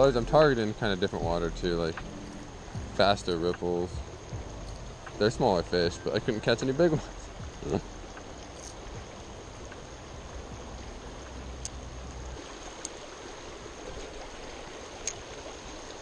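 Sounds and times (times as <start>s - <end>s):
stream water running: 0.0s - 16.0s
faint ticks: 1.8s - 13.0s, 15.0s - 15.4s.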